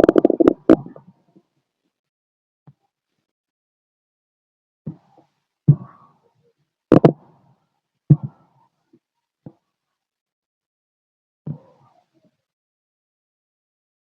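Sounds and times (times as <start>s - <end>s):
stomach gurgles through stethoscope: 0.0s - 1.0s, 6.9s - 7.2s.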